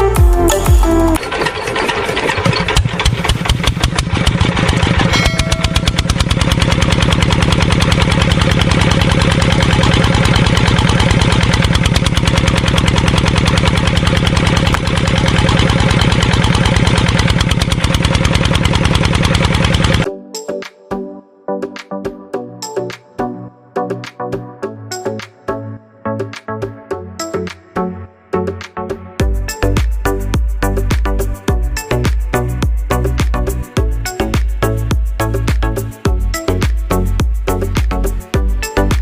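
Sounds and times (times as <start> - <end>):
small engine running: 0.9 - 20.1.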